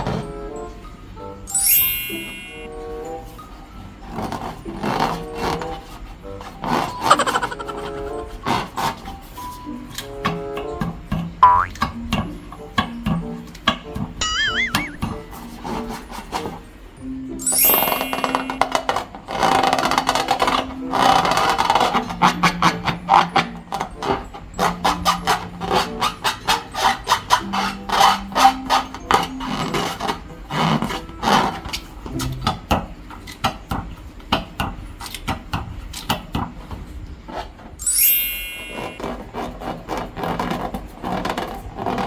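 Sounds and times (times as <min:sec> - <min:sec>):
short low tones: 0:11.4 - 0:11.8.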